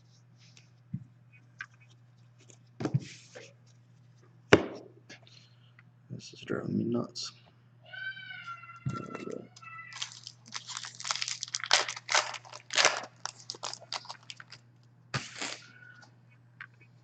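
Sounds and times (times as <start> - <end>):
wrapper crinkling and crackling: 9.9 - 14.6.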